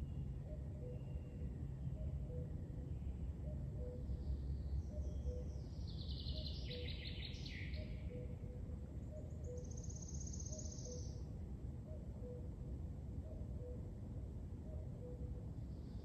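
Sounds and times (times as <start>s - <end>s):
songbirds singing: 0.0s - 11.3s
low background rumble: 0.0s - 16.0s.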